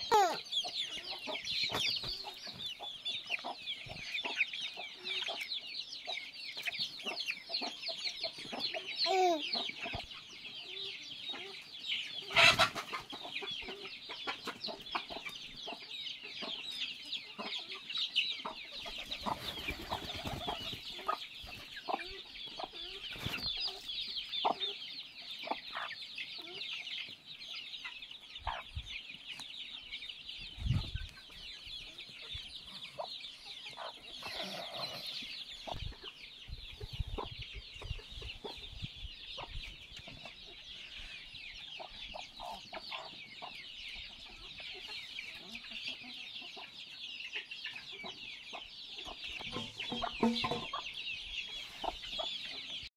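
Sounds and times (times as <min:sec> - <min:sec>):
chickens clucking: 0:00.0 - 0:52.9
chorus of high chirping: 0:00.0 - 0:52.9.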